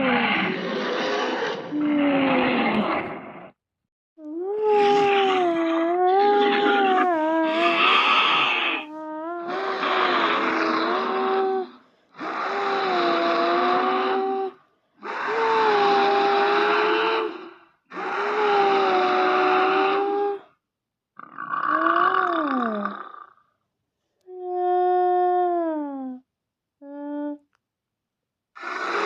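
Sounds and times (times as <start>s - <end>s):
rough creature calls: 0.0s - 3.5s, 4.8s - 11.4s, 28.6s - 29.0s.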